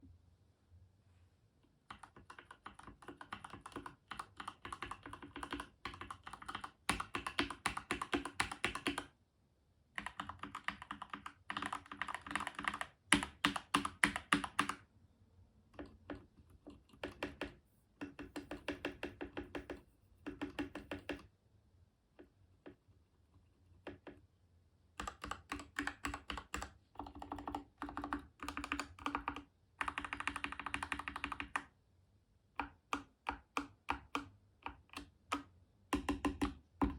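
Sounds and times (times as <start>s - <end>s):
typing on mechanical keyboard: 1.9s - 9.1s, 10.0s - 14.8s, 15.8s - 21.3s, 23.8s - 24.2s, 25.0s - 31.8s, 32.6s - 36.9s.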